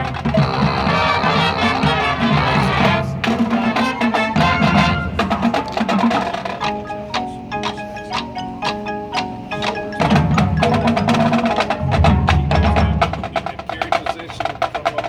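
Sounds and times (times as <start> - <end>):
mallet percussion notes: 0.0 - 14.1
marching band playing: 0.0 - 15.0.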